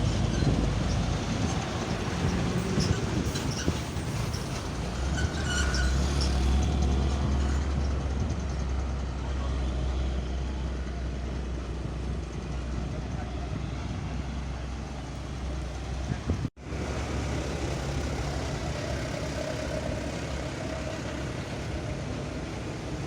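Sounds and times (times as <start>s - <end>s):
low engine rumble: 0.0s - 23.0s.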